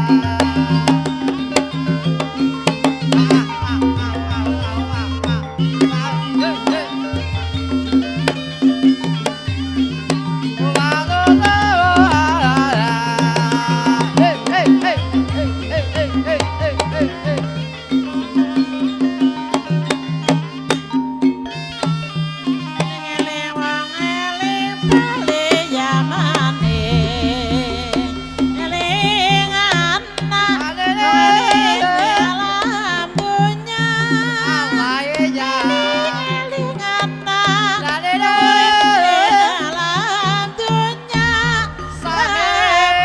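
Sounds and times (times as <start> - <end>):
wavering melodic line: 0.0 - 22.7, 24.6 - 43.0
hand-drum strokes: 0.0 - 23.5, 24.5 - 43.0
low gong tones: 26.6 - 33.4.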